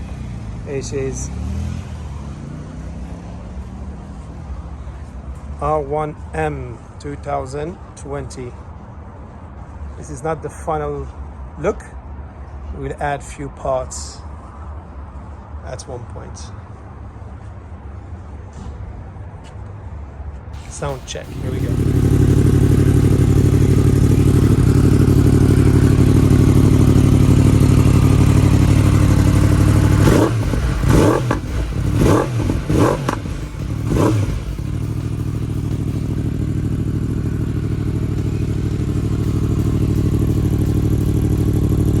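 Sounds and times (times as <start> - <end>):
motorcycle engine running: 20.6 - 42.0
motorcycle throttle blips: 20.6 - 42.0.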